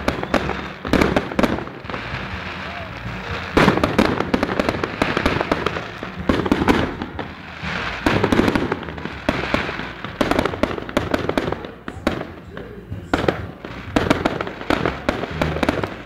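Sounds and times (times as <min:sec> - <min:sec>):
fireworks crackling and banging: 0:00.0 - 0:16.0.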